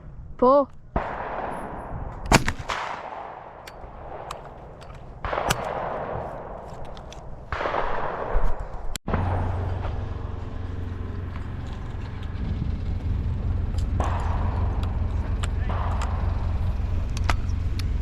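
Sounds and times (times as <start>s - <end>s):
steady low rumble: 0.0s - 18.0s
shotguns firing with echo: 0.9s - 11.0s, 13.9s - 17.6s.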